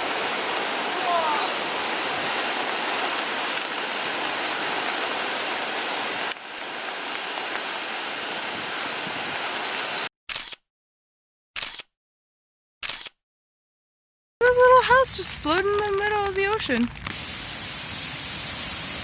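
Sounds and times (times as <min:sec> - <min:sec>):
waterfall rushing: 0:00.0 - 0:10.1.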